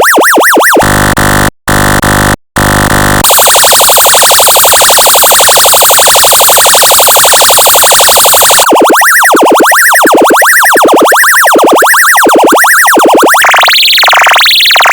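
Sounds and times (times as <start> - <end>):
shrill warbling siren: 0.0 - 2.0, 2.6 - 14.9
electronic yelp siren: 0.0 - 14.9
buzzing horn tone: 0.8 - 6.7.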